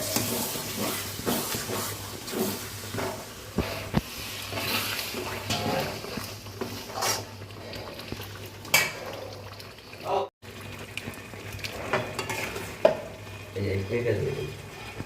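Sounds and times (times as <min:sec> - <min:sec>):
metal spoon scraping a pan: 0:00.0 - 0:08.0, 0:11.8 - 0:13.4.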